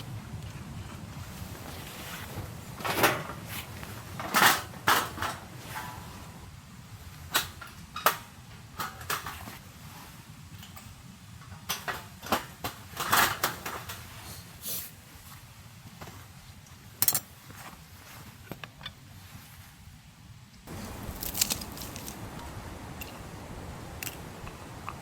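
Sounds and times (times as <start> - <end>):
steady low rumble: 20.7 - 25.0.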